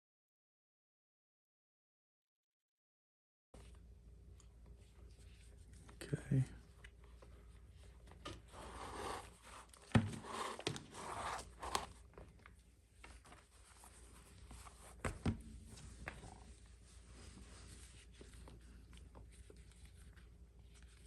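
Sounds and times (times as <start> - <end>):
leather lace scraping and rustling: 8.5 - 12.3.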